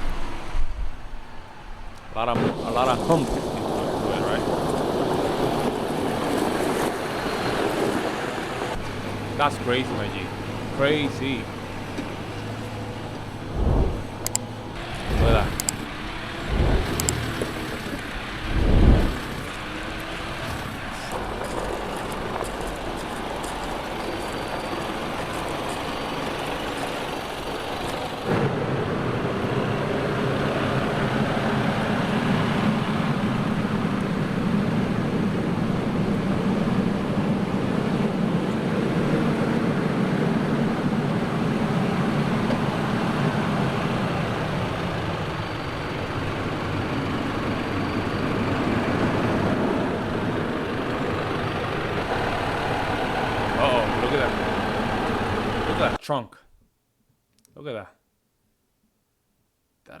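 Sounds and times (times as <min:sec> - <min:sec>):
truck engine running: 0:02.0 - 0:56.0
loud thump: 0:13.5 - 0:14.3.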